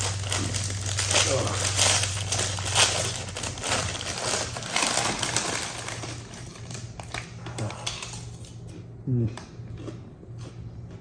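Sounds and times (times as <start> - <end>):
food packaging crinkling: 0.0 - 8.6
steady low hum: 0.0 - 11.0.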